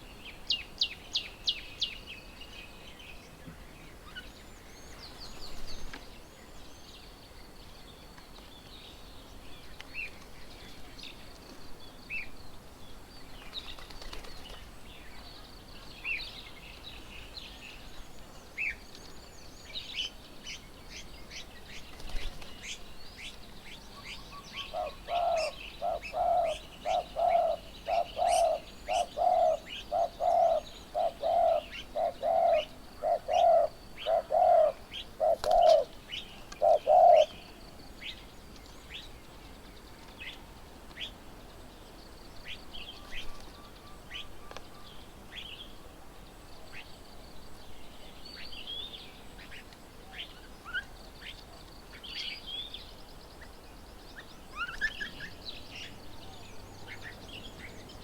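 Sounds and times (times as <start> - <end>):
birds chirping and twittering: 0.0 - 58.0
bird hooting: 24.6 - 35.9, 36.6 - 37.3.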